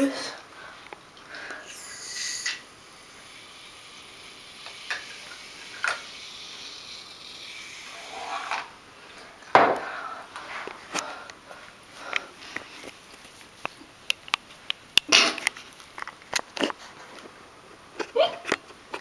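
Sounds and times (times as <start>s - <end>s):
brief hiss: 1.6s - 2.6s
objects rubbing and clicking: 4.6s - 8.7s.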